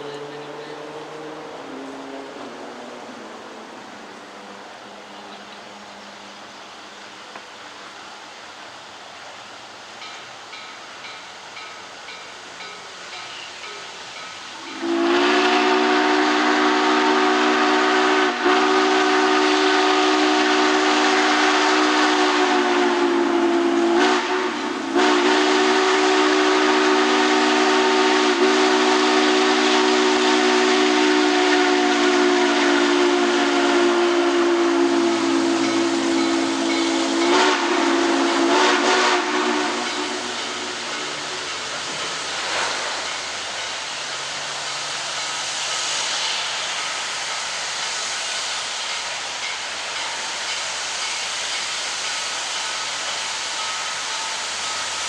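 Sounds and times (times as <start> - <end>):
steam hissing: 0.0 - 55.0
steam whistle blast: 14.6 - 41.5.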